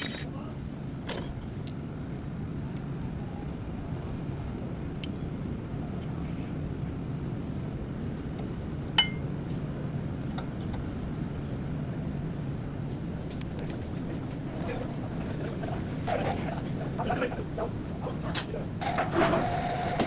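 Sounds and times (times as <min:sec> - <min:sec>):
ringing metallic clink: 0:00.0 - 0:00.4, 0:01.1 - 0:01.5, 0:09.0 - 0:09.3.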